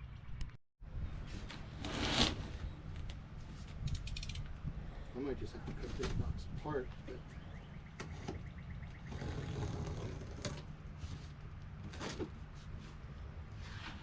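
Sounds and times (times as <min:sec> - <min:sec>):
cardboard box scraping: 0:01.4 - 0:02.7, 0:09.1 - 0:14.0.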